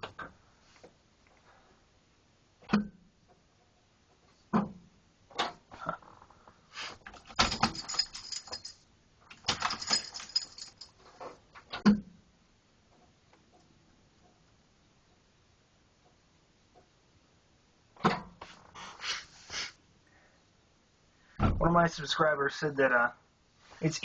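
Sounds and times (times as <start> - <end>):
handling knocks and clicks: 7.0 - 11.0
jingling rattle: 7.3 - 11.0.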